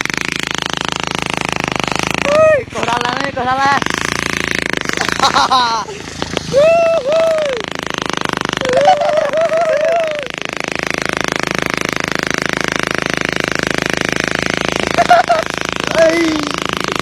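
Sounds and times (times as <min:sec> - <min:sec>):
motorcycle engine running: 0:00.0 - 0:17.0
person calling out: 0:02.2 - 0:03.1, 0:06.5 - 0:07.6, 0:15.8 - 0:16.6.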